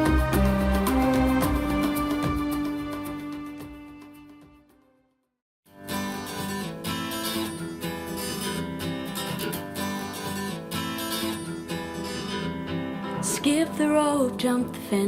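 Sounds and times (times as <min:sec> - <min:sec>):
instrumental music through speakers: 0:00.0 - 0:04.6
upbeat pop song with acoustic guitar: 0:05.8 - 0:15.0.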